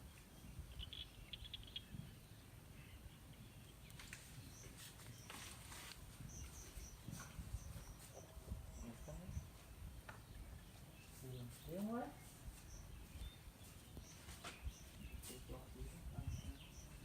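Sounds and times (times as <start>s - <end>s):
high bird chirps: 0.4s - 9.6s
soft rustling: 3.9s - 8.7s, 10.6s - 16.0s
low wind rumble: 6.0s - 17.0s.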